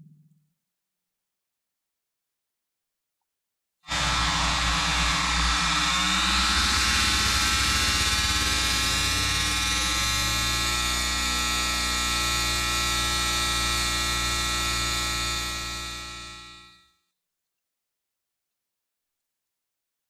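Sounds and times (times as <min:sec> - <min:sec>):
sweeping electronic buzz: 0:03.9 - 0:16.8.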